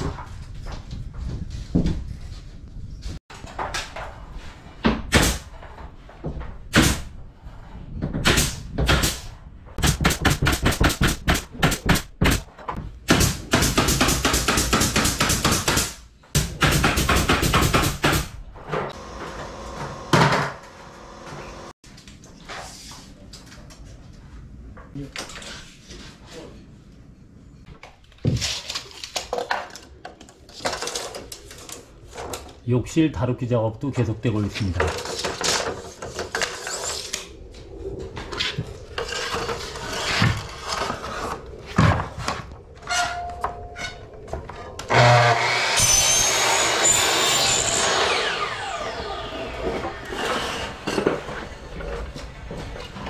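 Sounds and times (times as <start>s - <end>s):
sharp knocks and impacts: 8.0s - 18.9s.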